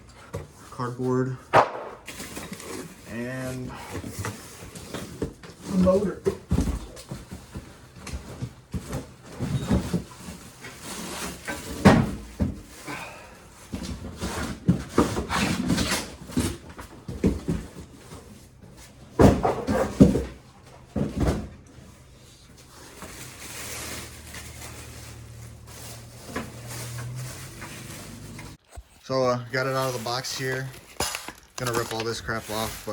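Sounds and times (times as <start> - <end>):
cardboard rustling: 2.0 - 32.9
knocks and thumps: 19.1 - 21.6.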